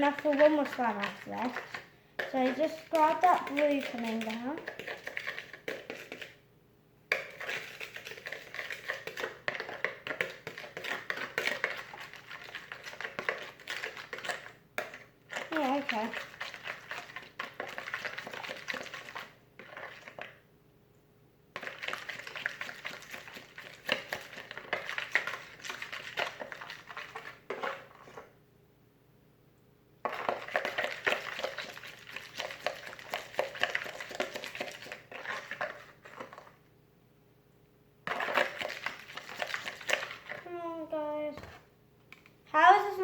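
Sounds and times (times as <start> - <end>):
small clicks of slime mixture: 0.0 - 6.4, 7.1 - 28.4, 29.5 - 36.7, 37.5 - 40.8, 42.0 - 42.4
utensil scraping against a bowl: 0.0 - 6.4, 7.1 - 20.3, 21.6 - 28.3, 30.0 - 36.5, 38.1 - 40.4.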